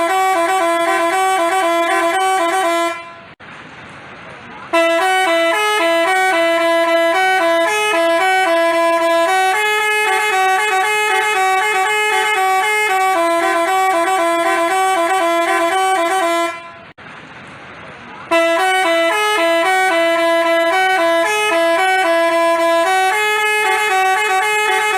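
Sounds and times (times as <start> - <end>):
musical horn tune: 0.0 - 3.4, 4.7 - 16.9, 18.3 - 24.9.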